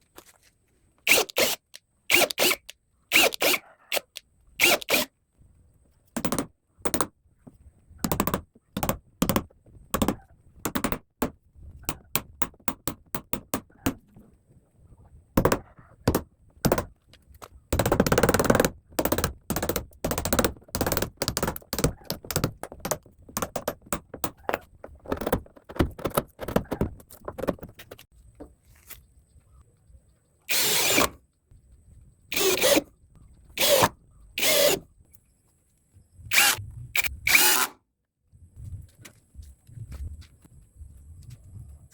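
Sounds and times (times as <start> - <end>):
scraping and rattling: 15.5 - 28.1.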